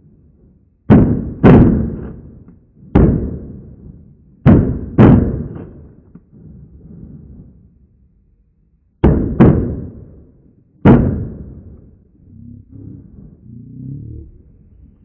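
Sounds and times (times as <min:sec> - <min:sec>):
shotgun shots: 0:00.9 - 0:03.6, 0:04.4 - 0:06.0, 0:09.0 - 0:10.2, 0:10.8 - 0:11.8.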